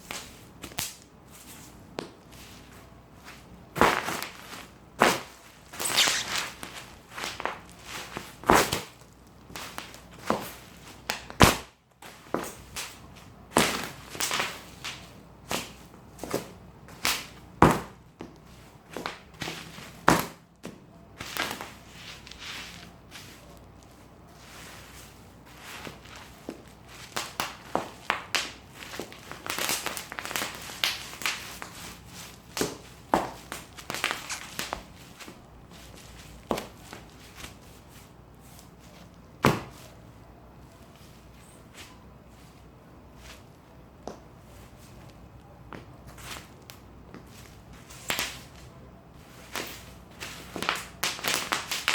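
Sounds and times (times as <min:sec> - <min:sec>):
plastic crinkling: 0:03.8 - 0:11.3, 0:21.2 - 0:39.9, 0:49.2 - 0:51.9
bubble wrap popping: 0:05.1 - 0:10.4, 0:25.6 - 0:37.6, 0:49.3 - 0:51.9.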